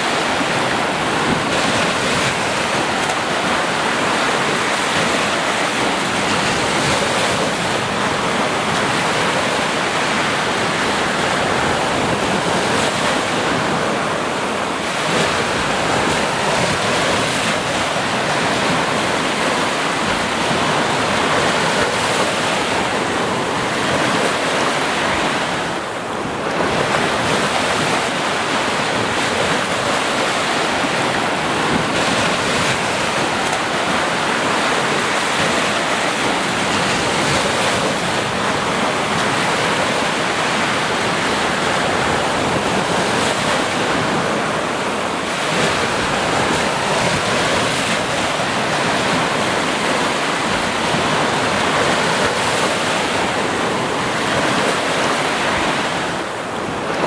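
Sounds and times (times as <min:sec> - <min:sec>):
sea waves washing onto beach: 0:00.0 - 0:57.0.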